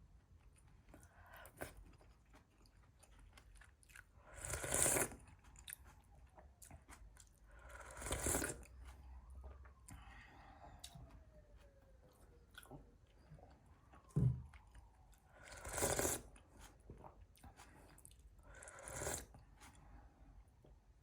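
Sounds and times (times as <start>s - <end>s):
person chewing: 0.3s - 10.1s, 10.8s - 13.7s, 14.5s - 19.9s.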